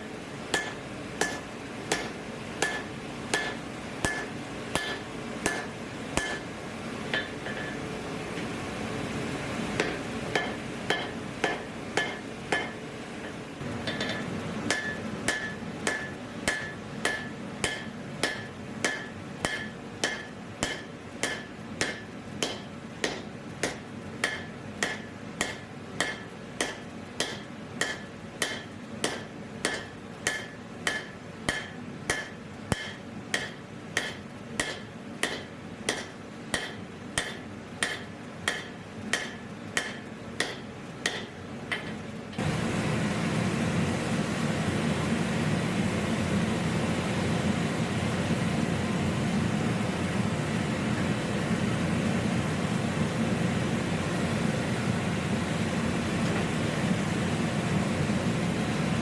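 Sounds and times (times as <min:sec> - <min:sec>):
hammer striking steel on anvil: 0:00.5 - 0:08.6, 0:09.8 - 0:42.1.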